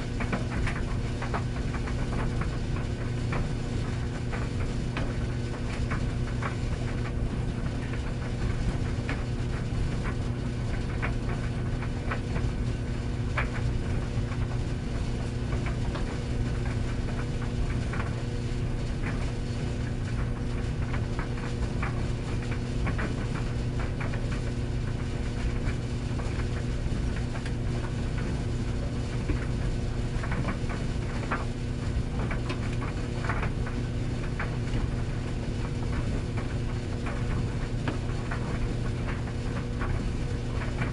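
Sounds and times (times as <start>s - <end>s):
tumble dryer motor hum: 0.0s - 40.9s
load knocking in dryer drum: 0.1s - 3.6s.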